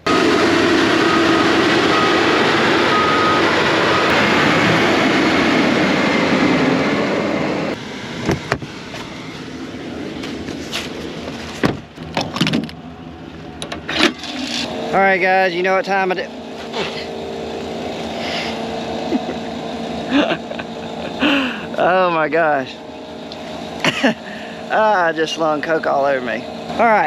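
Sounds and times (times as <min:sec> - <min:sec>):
crop sprayer engine running: 0:00.0 - 0:12.8, 0:13.5 - 0:27.0
knocks and clanks: 0:11.2 - 0:12.8.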